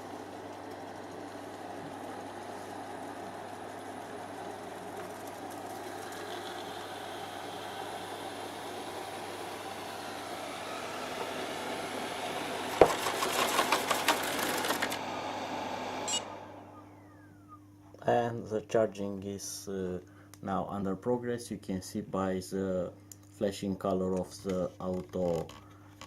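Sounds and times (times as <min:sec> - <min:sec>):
robot vacuum motor whirring: 0:05.0 - 0:17.5.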